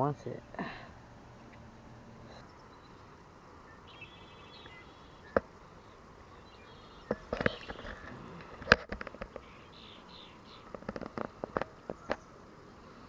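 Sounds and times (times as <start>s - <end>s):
quick run of small ticks: 6.7s - 13.0s.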